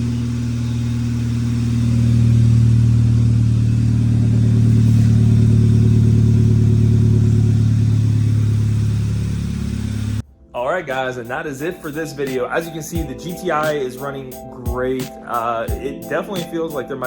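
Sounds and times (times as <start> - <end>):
car engine running: 0.0 - 10.2.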